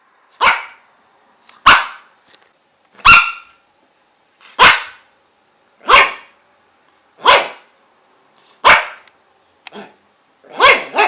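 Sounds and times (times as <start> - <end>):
puppy barking: 0.4 - 0.8, 1.6 - 2.1, 3.0 - 3.6, 4.6 - 5.1, 5.8 - 6.4, 7.2 - 7.7, 8.6 - 9.1, 9.7 - 11.0.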